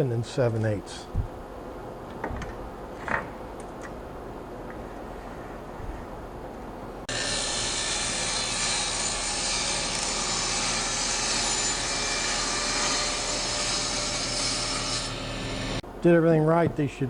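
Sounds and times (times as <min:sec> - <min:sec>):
table saw running: 0:07.1 - 0:15.8.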